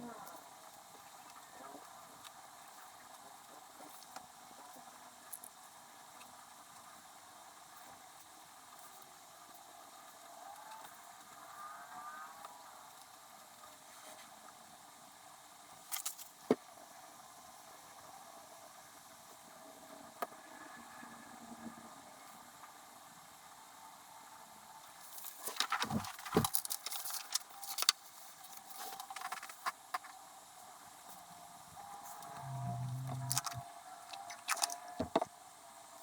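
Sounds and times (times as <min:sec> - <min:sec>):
faint steady hiss: 0:00.0 - 0:36.0
paper rustling: 0:25.1 - 0:30.1.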